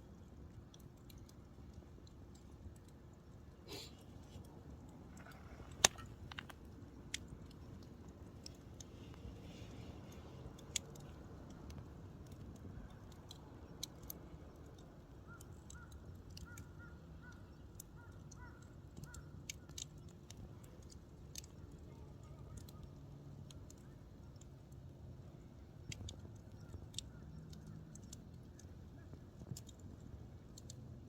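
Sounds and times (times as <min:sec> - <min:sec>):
campfire crackles and pops: 0:00.0 - 0:31.0
low rush of fire: 0:00.1 - 0:16.7.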